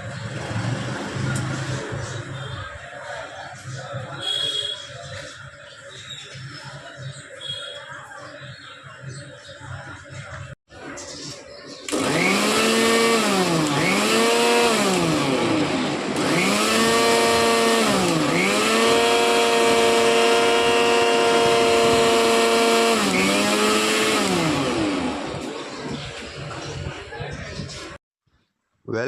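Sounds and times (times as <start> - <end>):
mixer grinder motor whine: 11.9 - 25.8.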